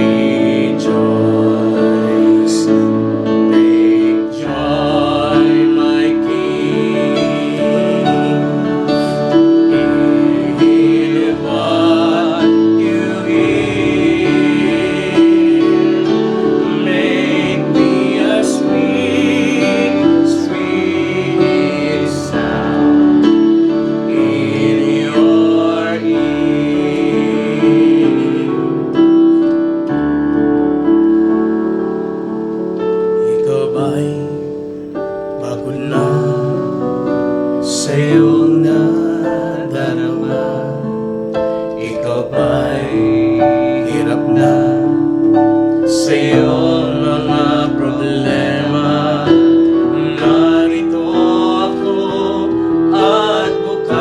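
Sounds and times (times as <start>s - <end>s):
slow gospel keyboard music: 0.0s - 54.0s.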